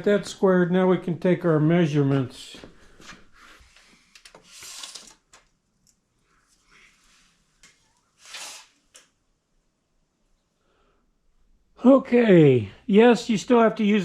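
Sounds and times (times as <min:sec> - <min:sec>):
brief rubbing sounds: 0:08.2 - 0:08.8.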